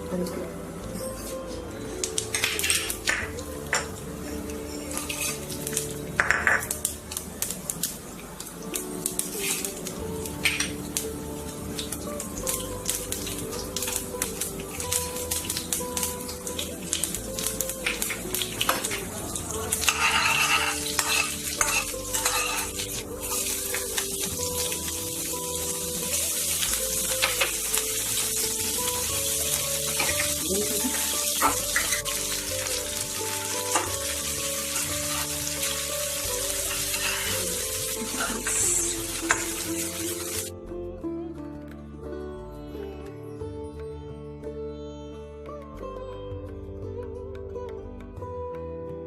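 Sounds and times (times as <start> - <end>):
food sizzling: 0.0 - 40.5
background music: 0.0 - 49.0
spoon scraping in a pan: 4.8 - 5.7, 9.3 - 9.8, 19.7 - 24.2, 29.9 - 32.2, 33.4 - 39.6
metal spoon scraping a pot: 4.9 - 5.5, 19.7 - 23.8, 36.5 - 38.7.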